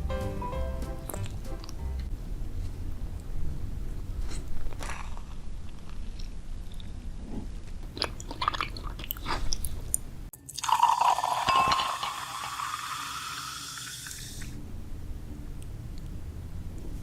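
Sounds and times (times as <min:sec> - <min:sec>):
crunchy bites and chewing: 0:04.6 - 0:07.0.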